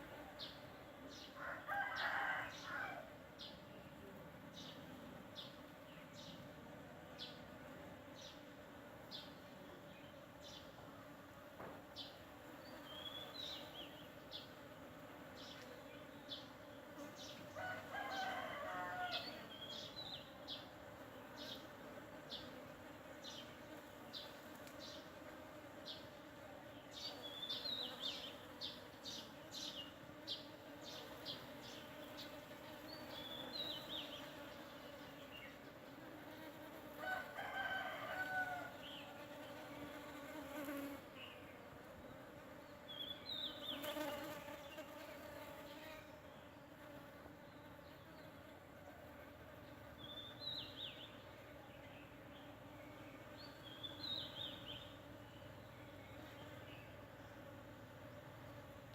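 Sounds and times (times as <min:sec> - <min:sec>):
rooster crowing: 0:01.4 - 0:03.1, 0:17.6 - 0:19.4, 0:37.0 - 0:38.9
honeybees buzzing: 0:04.4 - 0:58.9
small birds chirping: 0:37.5 - 0:46.6.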